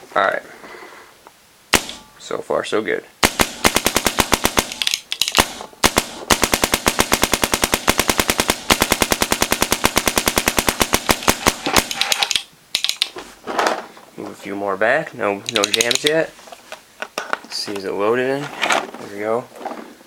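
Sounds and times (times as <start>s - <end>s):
paintball marker rapid firing: 1.7s - 2.0s, 3.2s - 13.0s, 15.5s - 16.1s.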